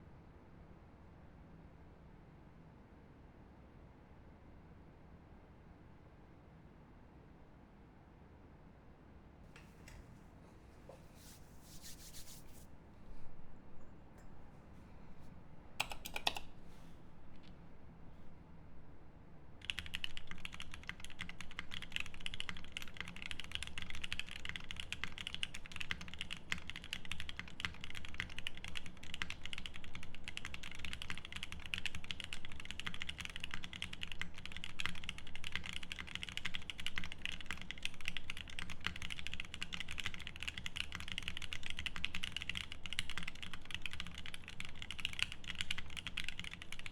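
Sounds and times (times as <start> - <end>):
typing on mechanical keyboard: 15.8 - 16.6, 19.6 - 46.9.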